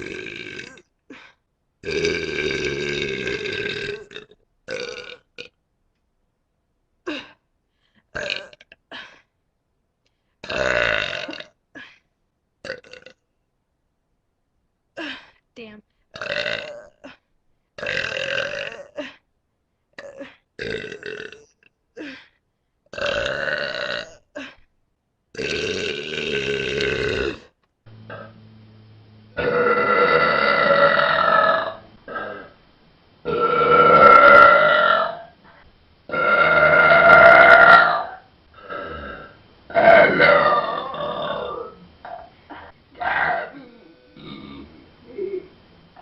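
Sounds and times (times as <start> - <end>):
person burping: 0.0 - 1.2, 1.8 - 5.6, 8.2 - 9.0, 10.4 - 11.6, 12.6 - 13.2, 16.2 - 17.2, 17.8 - 19.1, 20.0 - 21.6, 22.9 - 24.6, 25.4 - 27.5, 29.3 - 32.6, 33.3 - 35.4, 36.1 - 46.0.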